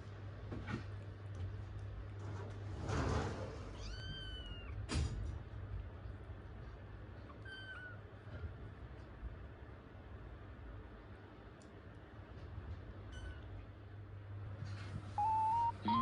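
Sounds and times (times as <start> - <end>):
kitten mewing: 15.2 - 16.0.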